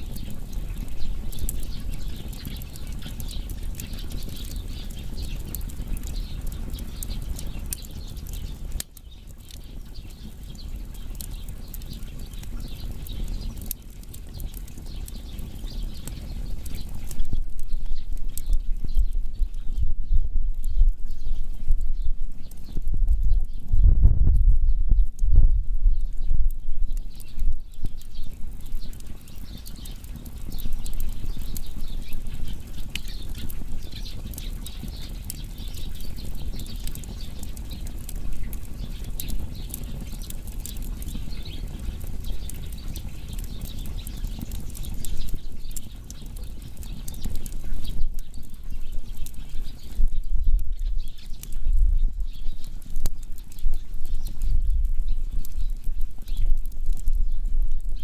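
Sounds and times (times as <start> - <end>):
wood fire crackling: 0.0 - 58.0
low rumble: 17.3 - 27.6.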